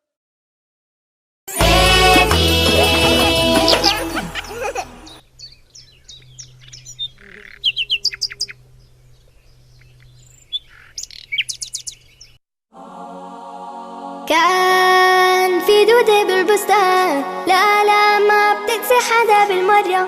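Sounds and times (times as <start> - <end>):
soft musical intro: 1.5 - 5.2, 12.7 - 18.9
birds chirping: 3.4 - 12.4.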